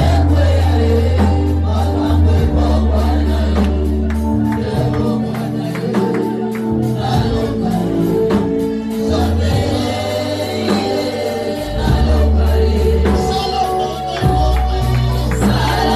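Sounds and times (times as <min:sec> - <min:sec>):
gospel singing over band: 0:00.0 - 0:15.9
held bass notes: 0:00.0 - 0:15.9
percussive beat: 0:09.5 - 0:15.9.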